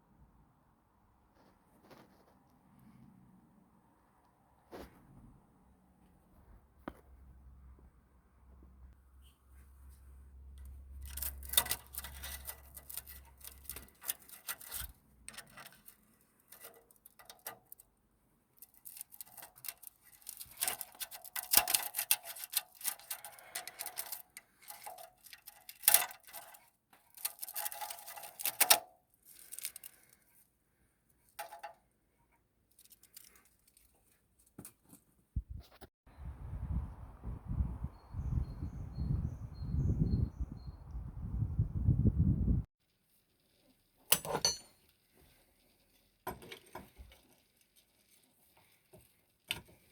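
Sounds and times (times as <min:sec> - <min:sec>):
metallic clinking of hand tools: 0:44.1 - 0:44.8.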